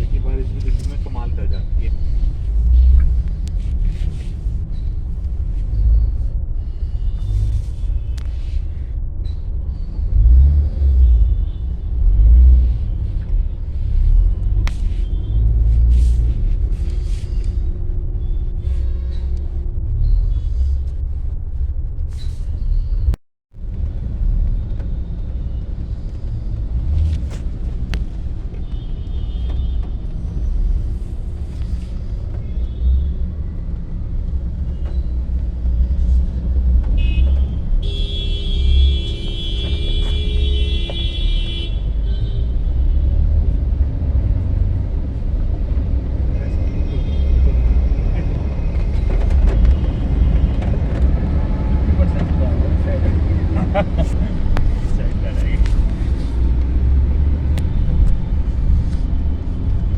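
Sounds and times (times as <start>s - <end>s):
road traffic rumble: 0.0s - 59.9s
vehicle horn beeps: 36.9s - 42.6s
long horn blast: 37.0s - 42.9s.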